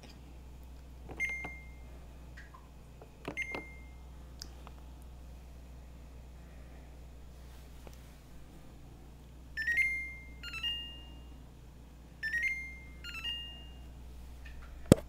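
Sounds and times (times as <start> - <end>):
refrigerator alert chime: 1.2 - 1.8, 3.4 - 4.0, 9.6 - 11.4, 12.2 - 14.0.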